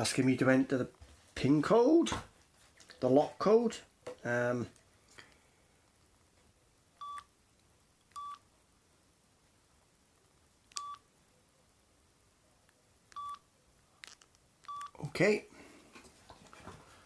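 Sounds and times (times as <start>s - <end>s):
phone keypad beeps: 7.0s - 7.3s, 8.2s - 8.4s, 10.8s - 11.0s, 13.2s - 13.4s, 14.6s - 15.0s.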